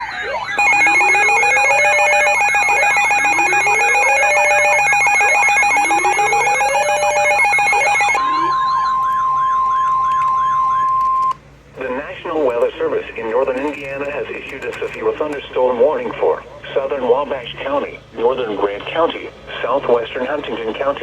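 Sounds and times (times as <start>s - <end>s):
steady alert tones: 0.0s - 10.8s
rising whoop alarm: 0.0s - 11.2s
wailing sirens: 0.0s - 11.4s.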